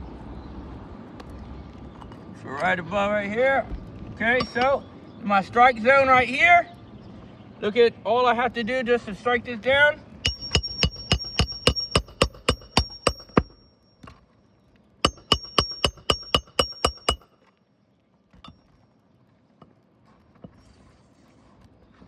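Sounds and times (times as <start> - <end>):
hammer striking steel tool: 4.3 - 4.8, 10.3 - 14.1, 15.1 - 17.3.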